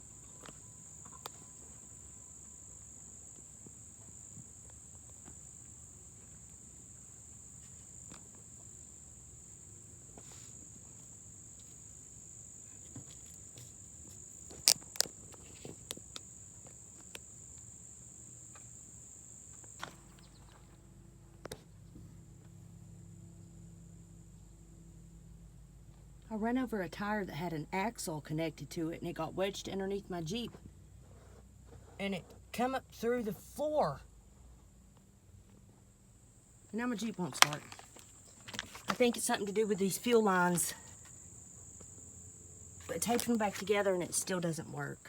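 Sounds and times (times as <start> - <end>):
insects chirring: 0.0 - 20.7, 36.1 - 45.0.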